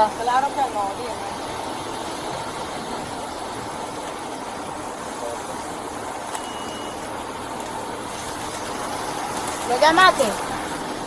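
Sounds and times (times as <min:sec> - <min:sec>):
steady rushing noise: 0:00.0 - 0:11.0
faint high beep: 0:06.3 - 0:07.1.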